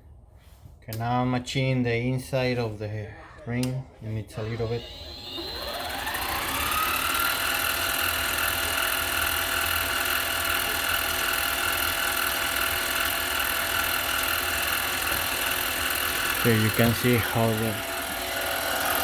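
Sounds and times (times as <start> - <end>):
lathe motor whining: 4.1 - 19.0.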